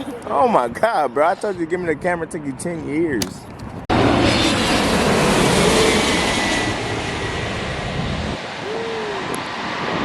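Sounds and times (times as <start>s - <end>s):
jet airliner engine roar: 3.9s - 10.0s.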